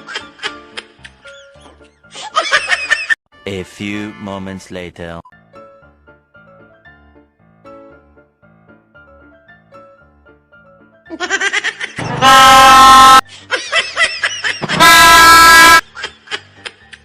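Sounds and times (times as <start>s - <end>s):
train horn blasts: 14.7s - 15.8s.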